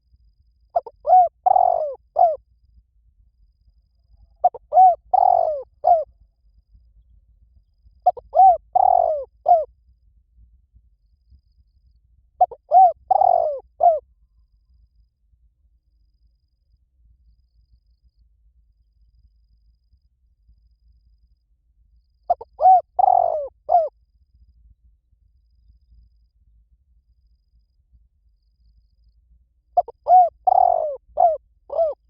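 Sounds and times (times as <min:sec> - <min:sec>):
dove cooing: 0:00.8 - 0:02.4, 0:04.4 - 0:06.1, 0:08.0 - 0:09.7, 0:12.4 - 0:14.0, 0:22.3 - 0:23.9, 0:29.8 - 0:32.0.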